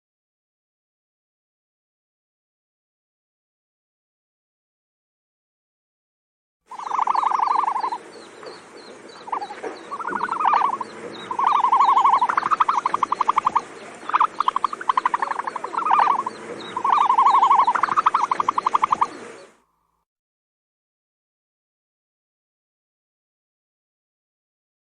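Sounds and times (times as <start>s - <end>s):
ostrich calling with stuttering trills: 6.7s - 19.6s.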